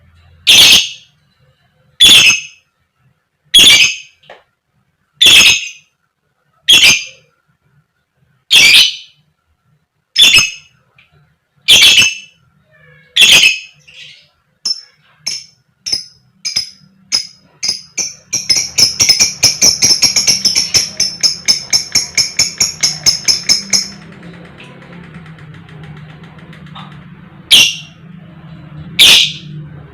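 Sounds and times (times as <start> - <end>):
lovebird sharp chirps: 2.0 - 2.6, 13.2 - 23.9
lovebird shrill calls: 11.7 - 12.3
lovebird rapid chattering: 14.6 - 24.0.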